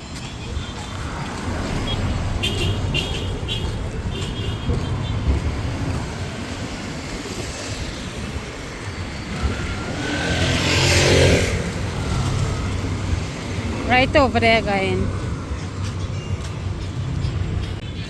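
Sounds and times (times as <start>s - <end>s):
traffic rumble: 0.0s - 18.0s
vehicle passing close: 1.1s - 15.6s.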